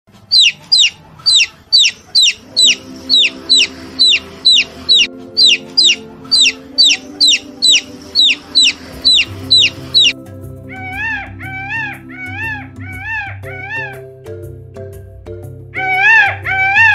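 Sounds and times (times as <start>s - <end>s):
chick peeping: 0.1s - 14.0s
soft background music: 0.1s - 16.9s.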